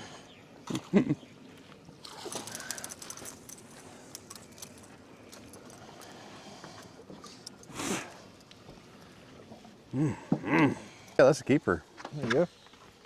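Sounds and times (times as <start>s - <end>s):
fishing gear clicking and rattling: 2.0s - 9.2s.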